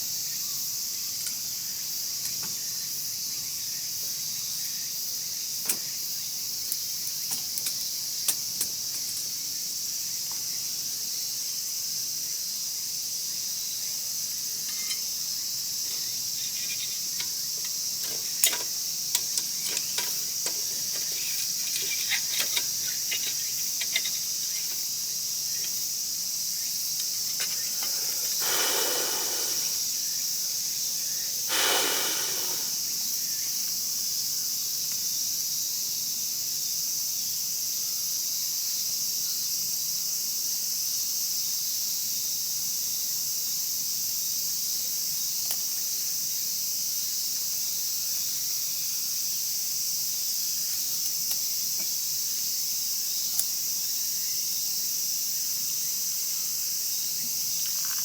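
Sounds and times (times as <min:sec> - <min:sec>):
crickets chirping: 0:00.0 - 0:58.0
short rush of noise: 0:31.5 - 0:32.8.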